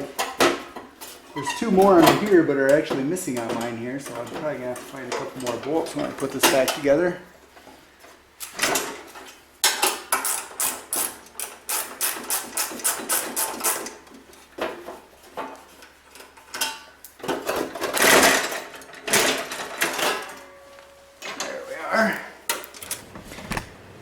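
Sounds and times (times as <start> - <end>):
metal panel scraping: 22.8 - 24.0.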